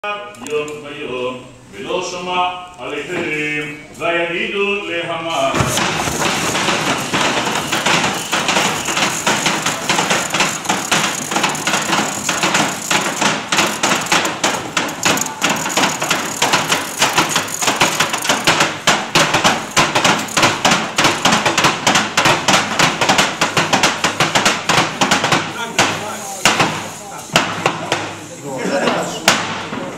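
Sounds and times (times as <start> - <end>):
banging: 5.4 - 28.2
ratchet noisemakers clattering: 5.5 - 27.0.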